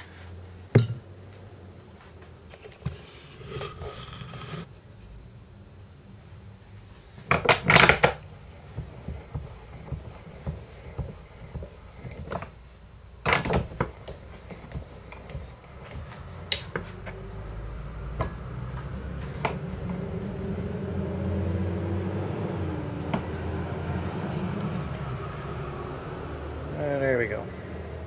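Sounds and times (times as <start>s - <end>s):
tools clattering on a workbench: 0.8s - 1.0s
low rumble: 14.9s - 28.0s.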